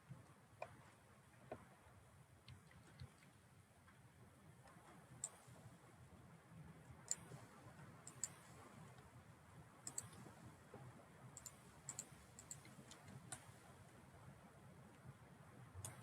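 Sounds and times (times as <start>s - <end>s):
faint low room noise: 0.0s - 16.0s
computer mouse clicking: 2.4s - 3.4s, 4.7s - 5.6s, 7.0s - 9.1s, 9.8s - 10.4s, 11.4s - 13.6s, 15.8s - 16.0s.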